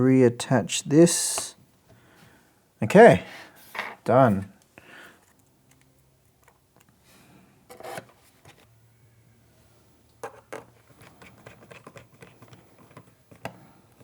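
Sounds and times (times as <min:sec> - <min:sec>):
laptop scraping: 0:07.7 - 0:08.7, 0:10.2 - 0:14.0.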